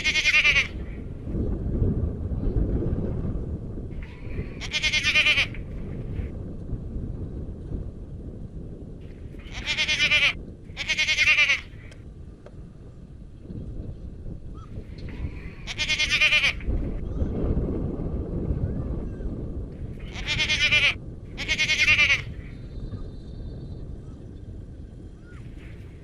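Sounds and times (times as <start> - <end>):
goat bleating: 0.0 - 0.8, 4.0 - 5.6, 9.4 - 11.7, 15.6 - 16.6, 20.0 - 22.3.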